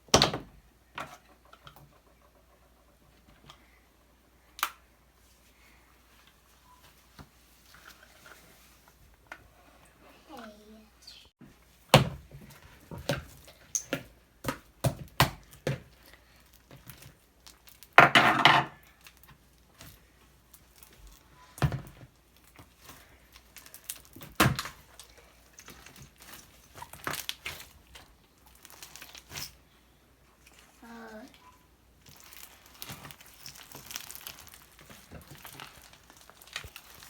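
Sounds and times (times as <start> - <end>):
clicks and knocks on hard surface: 18.0 - 18.8
crackling rustle: 18.9 - 37.0.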